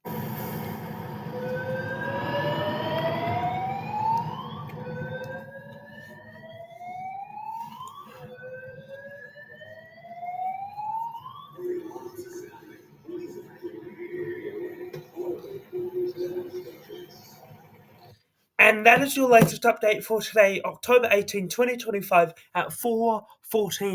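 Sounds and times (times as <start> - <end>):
fire alarm whoop: 1.1 - 15.8.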